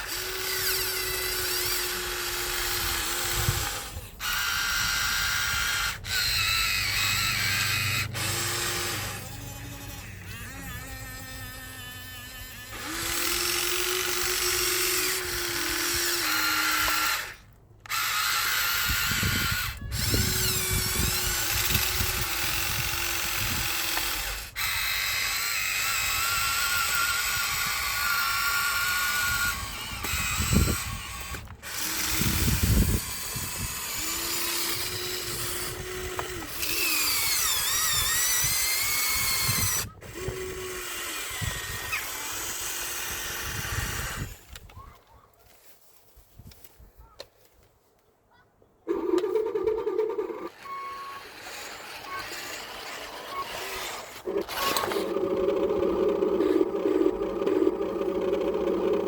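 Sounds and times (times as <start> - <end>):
electric motors whining: 0.0 - 44.7, 48.9 - 59.0.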